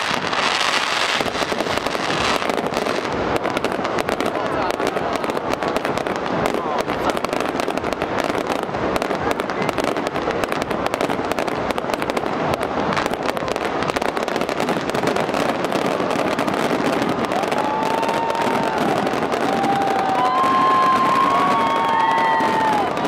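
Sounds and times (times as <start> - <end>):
firework whistle: 0.0 - 23.0
fireworks crackling: 0.0 - 23.0.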